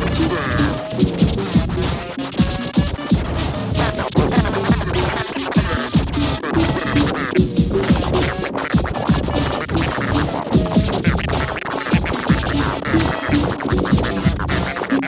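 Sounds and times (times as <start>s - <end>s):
music with turntable scratching: 0.0s - 15.0s.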